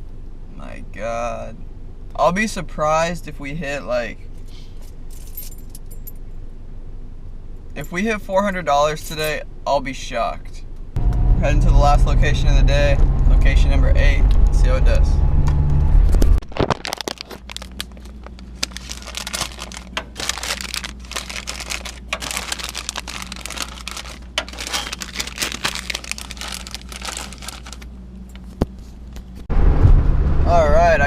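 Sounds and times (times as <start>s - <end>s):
steady low hum: 10.6s - 16.4s, 17.2s - 31.0s
in-car road rumble: 10.8s - 31.0s
crinkling and rustling: 16.0s - 29.5s.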